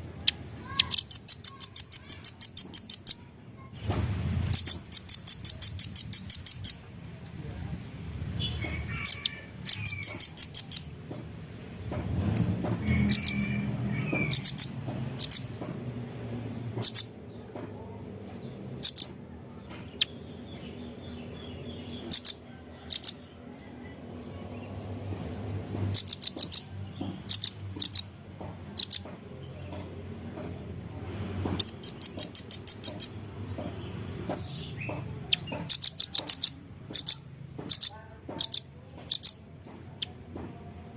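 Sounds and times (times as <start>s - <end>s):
faint bird twittering: 0.0s - 11.0s, 12.8s - 28.2s, 28.8s - 29.8s, 30.9s - 40.2s
bird high sharp chips: 0.2s - 3.3s, 31.6s - 33.2s, 34.8s - 39.4s.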